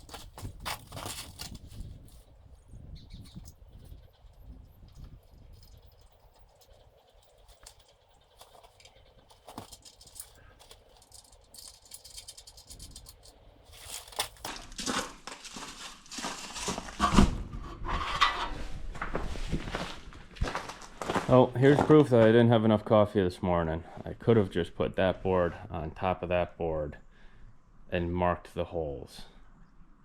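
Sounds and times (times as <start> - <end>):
boards being handled: 0.0 - 2.3, 6.3 - 19.8
rustling clattering knocks: 0.0 - 2.3, 4.9 - 19.3.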